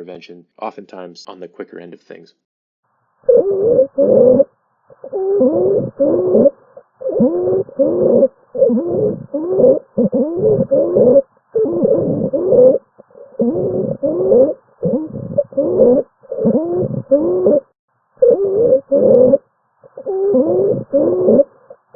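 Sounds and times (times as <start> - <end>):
noisy stridor breathing: 5.0 - 17.6.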